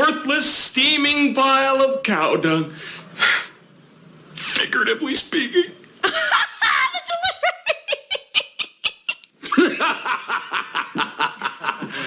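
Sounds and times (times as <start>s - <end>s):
hearty laughter: 6.0s - 12.0s.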